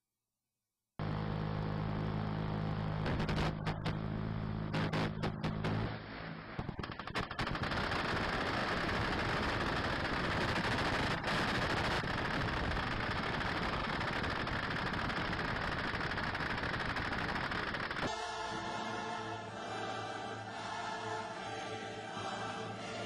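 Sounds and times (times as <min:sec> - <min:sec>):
minigun firing: 0:06.6 - 0:18.1.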